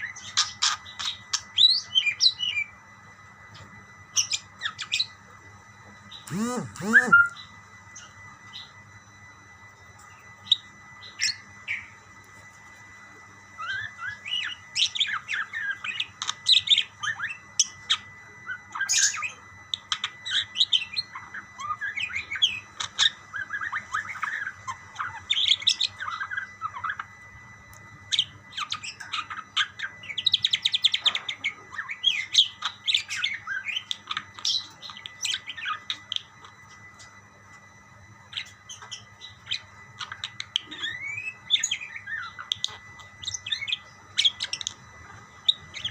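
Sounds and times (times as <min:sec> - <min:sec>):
budgerigars chirping and squawking: 0:00.1 - 0:02.4, 0:19.8 - 0:27.0, 0:45.4 - 0:45.9.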